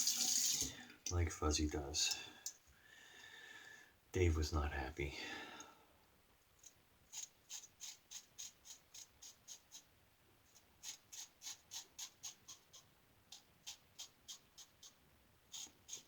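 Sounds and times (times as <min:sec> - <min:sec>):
razor scraping stubble: 0:06.6 - 0:09.8, 0:10.8 - 0:16.0.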